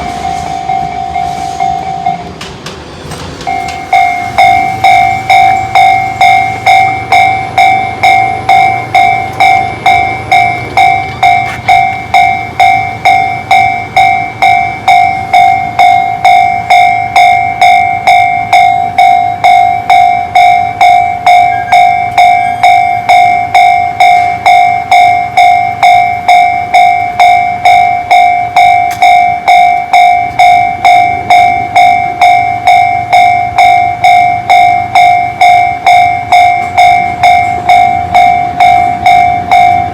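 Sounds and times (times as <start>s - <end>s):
electronic crossing warning bell: 0.0s - 2.4s, 3.4s - 39.9s.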